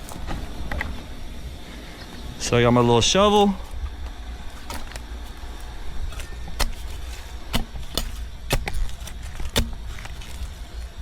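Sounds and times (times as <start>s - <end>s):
hand shovel chopping soil: 4.5s - 11.0s.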